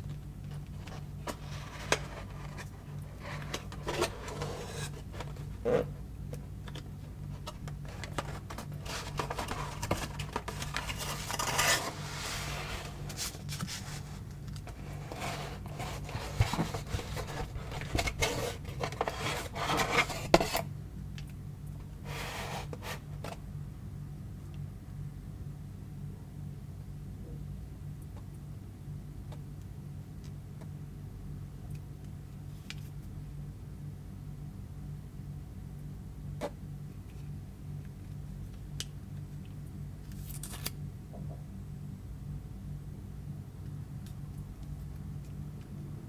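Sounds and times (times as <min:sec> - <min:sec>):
steady low hum: 0:00.0 - 0:46.0
packaging rubbing and scraping: 0:00.7 - 0:06.0, 0:07.2 - 0:20.7.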